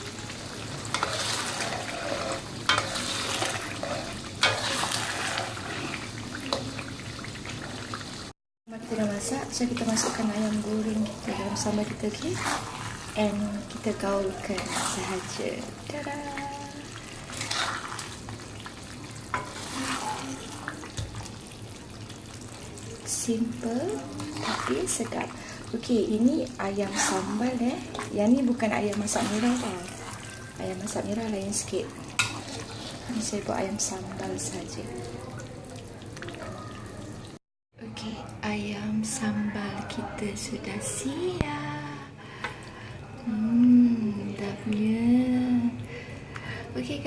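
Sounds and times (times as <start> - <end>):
sauce sizzling in hot oil: 0.0 - 37.4
spatula scraping in a pan: 0.4 - 7.0, 9.5 - 21.3, 23.8 - 34.8
spatula knocking and scraping pan: 0.9 - 5.6, 19.3 - 21.2.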